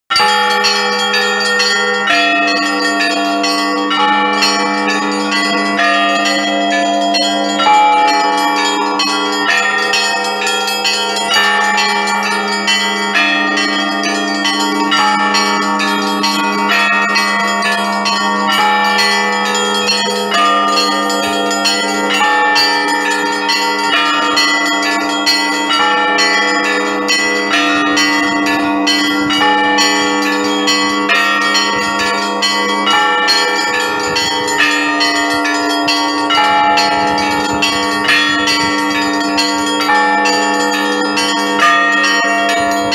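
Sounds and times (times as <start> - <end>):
large low church bells ringing: 0.1 - 42.9
small church bells striking quickly: 0.1 - 42.9.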